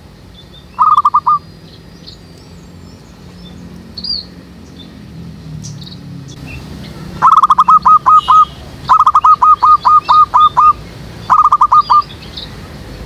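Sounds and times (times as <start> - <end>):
small birds chirping: 0.0 - 13.0
dove calling staccato notes: 0.7 - 1.5, 6.9 - 12.4.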